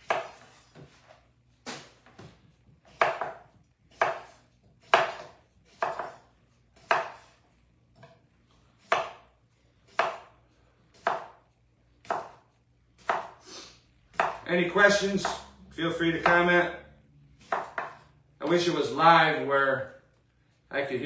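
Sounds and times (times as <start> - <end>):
knife chopping on cutting board: 0.0 - 1.0, 1.6 - 7.4, 8.8 - 9.3, 9.9 - 11.4, 12.0 - 13.4, 14.1 - 14.4, 15.0 - 15.5, 16.2 - 16.5, 17.4 - 18.1.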